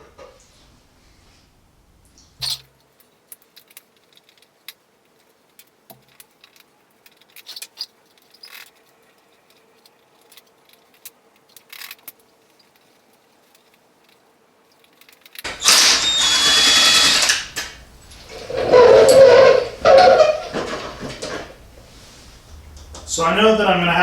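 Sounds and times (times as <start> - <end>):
metal tools clinking and rattling: 14.8 - 23.1
short scraping: 15.5 - 23.8.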